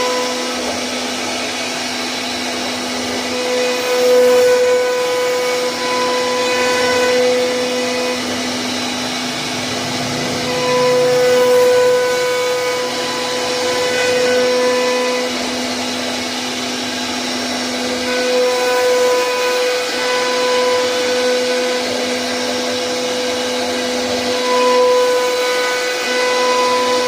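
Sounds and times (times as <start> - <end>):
router spindle whine: 0.0 - 27.0
hissing cutting noise: 6.5 - 16.4.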